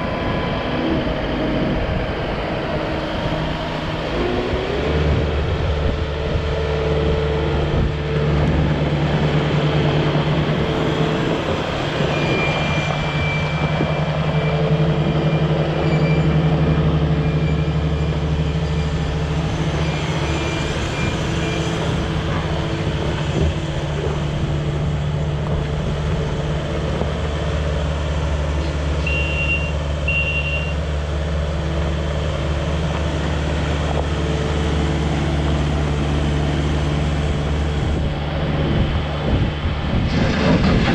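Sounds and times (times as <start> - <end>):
diesel engine running: 0.0 - 40.9
short beeps: 29.0 - 30.8.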